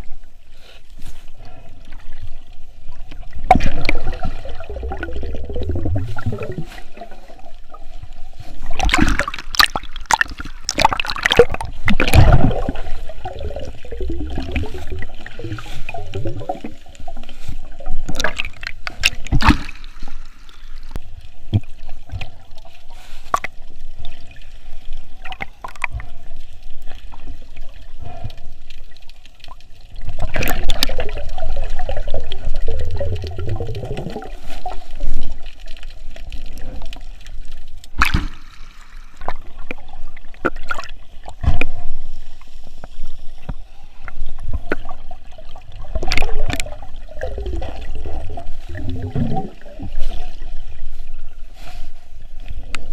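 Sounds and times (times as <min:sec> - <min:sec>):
water sloshing and gurgling: 0:00.0 - 0:52.9.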